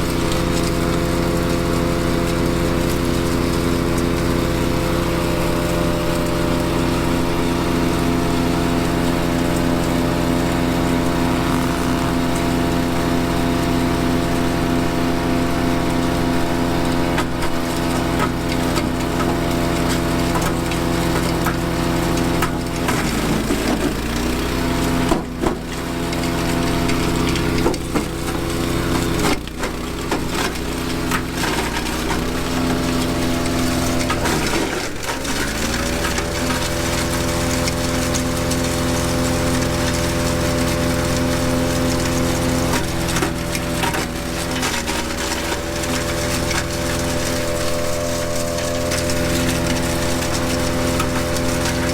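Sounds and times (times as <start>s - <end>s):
wood chipper engine running: 0.0s - 51.9s
wood cracking and splintering: 17.1s - 51.9s.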